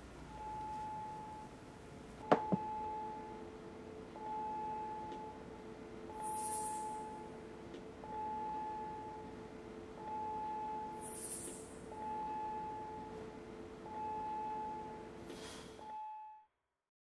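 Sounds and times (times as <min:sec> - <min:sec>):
electronic beep: 0:06.1 - 0:07.3, 0:10.1 - 0:13.1.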